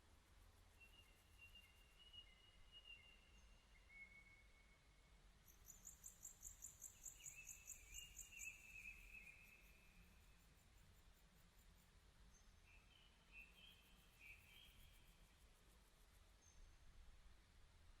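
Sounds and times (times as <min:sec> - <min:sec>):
high-pitched insect chirping: 0:05.5 - 0:10.6.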